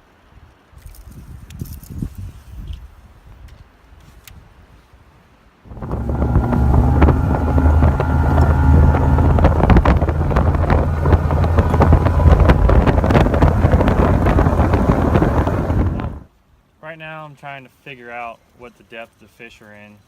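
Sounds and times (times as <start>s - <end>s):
wind on microphone: 0.9s - 4.8s, 5.7s - 16.3s
outboard motor running: 5.7s - 16.3s.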